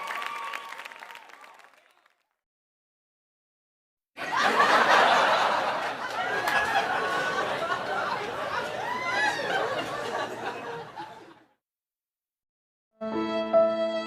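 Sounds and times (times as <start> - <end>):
crowd applause: 0.0 - 2.2, 4.2 - 11.4
crowd laughing: 4.2 - 11.6.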